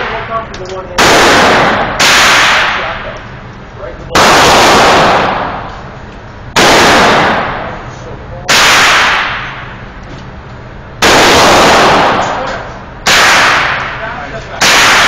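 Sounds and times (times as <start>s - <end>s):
gunshots echoing: 0.9s - 3.2s, 4.1s - 5.7s, 6.5s - 9.8s, 11.0s - 15.0s.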